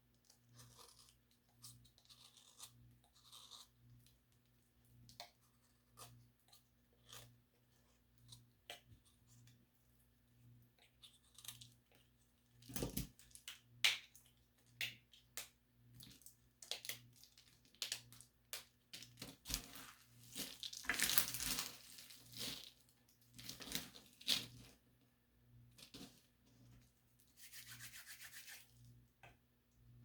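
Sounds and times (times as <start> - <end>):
brittle crunching and crackling: 16.1 - 24.7.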